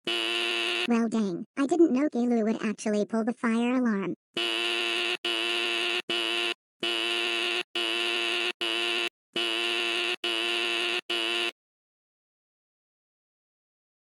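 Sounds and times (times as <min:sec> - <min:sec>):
fire alarm buzzing blasts: 0:00.0 - 0:00.9, 0:04.4 - 0:11.6.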